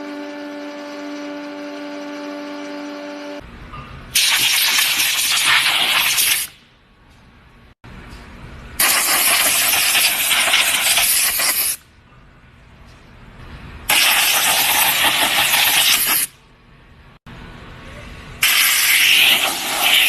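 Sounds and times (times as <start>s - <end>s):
loud even hissing noise: 8.8s - 11.8s, 18.4s - 20.0s.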